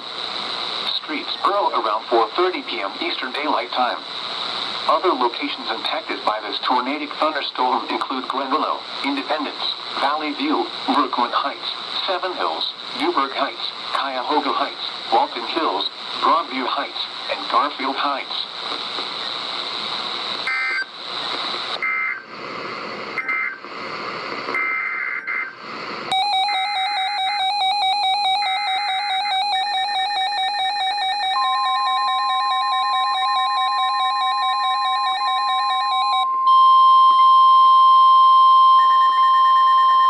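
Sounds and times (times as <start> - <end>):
steady high warning tone: 24.5 - 40.0
warbling electronic alarm: 26.1 - 40.0.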